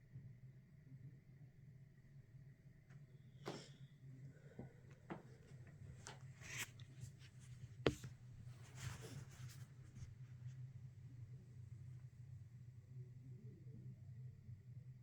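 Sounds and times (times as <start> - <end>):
faint knocks and scuffs: 6.1 - 10.3.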